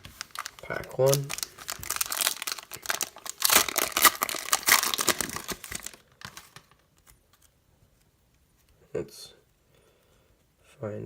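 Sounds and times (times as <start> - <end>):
wrapper tearing and crinkling: 0.0 - 6.8.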